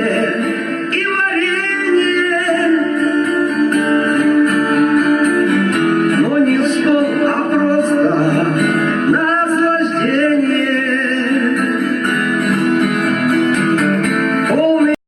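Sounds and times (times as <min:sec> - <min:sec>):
song with guitar and vocals: 0:00.0 - 0:15.0.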